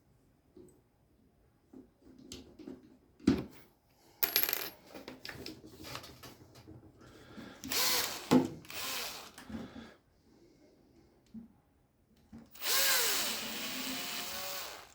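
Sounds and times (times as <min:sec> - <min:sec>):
small metal parts clinking: 0:04.2 - 0:04.8.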